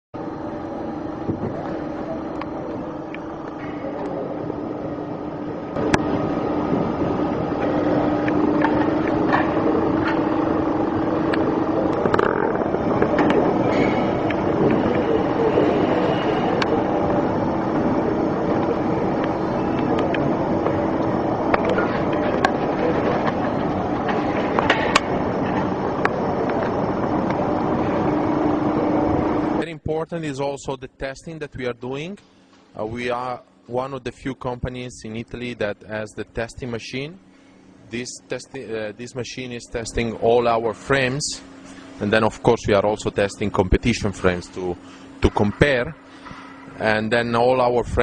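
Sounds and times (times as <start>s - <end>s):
machine hum: 0.2s - 48.0s
sharp clanks and knocks: 12.0s - 14.8s
continuous clatter: 18.5s - 28.1s.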